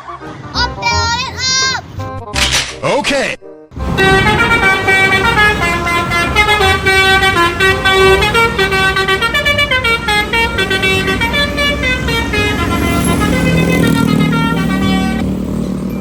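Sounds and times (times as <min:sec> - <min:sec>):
musical air horn melody: 0:03.8 - 0:15.6.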